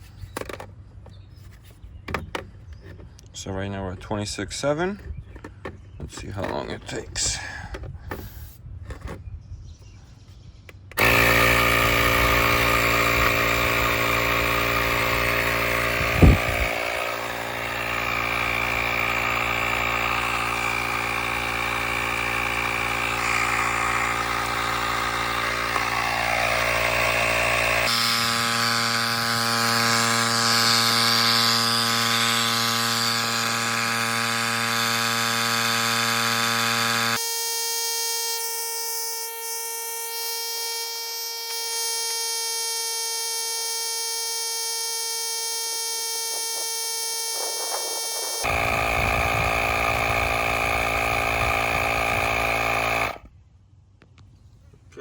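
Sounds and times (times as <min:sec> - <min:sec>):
tire inflator running: 0:11.0 - 0:53.3.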